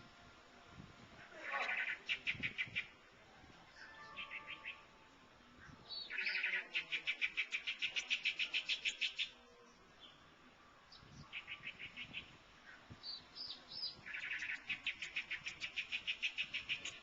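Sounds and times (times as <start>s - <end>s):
bird chirping in rapid runs: 13.0s - 17.0s.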